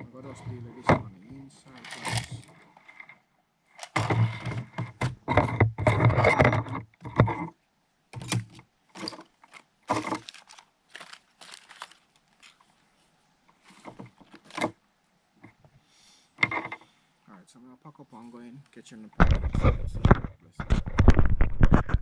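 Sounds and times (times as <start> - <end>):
handling clicks and knocks: 0.8 - 2.6, 8.2 - 12.7, 13.6 - 14.8.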